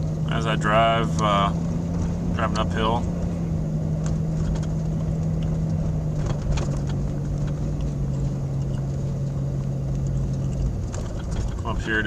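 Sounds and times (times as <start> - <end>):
car engine pulling uphill: 0.0 - 12.0.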